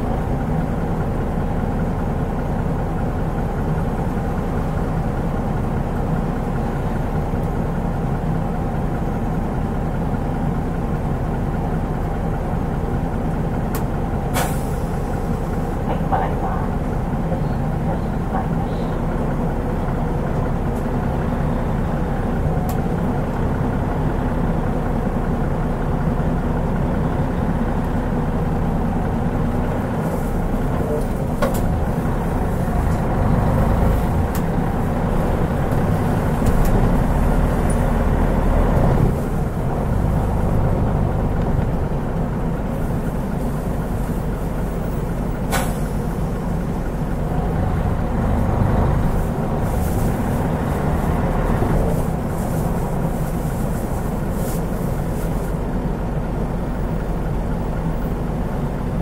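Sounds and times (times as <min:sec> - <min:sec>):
bus diesel engine running: 0:00.0 - 0:59.0
short sharp clicks or hisses: 0:14.3 - 0:14.8, 0:45.5 - 0:45.9.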